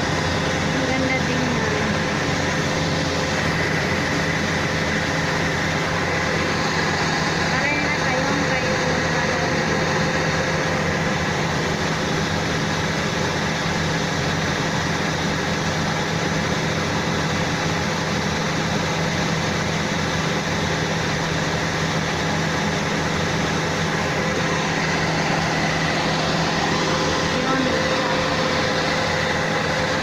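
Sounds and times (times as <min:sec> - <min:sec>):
combine harvester engine droning: 0:00.0 - 0:30.0.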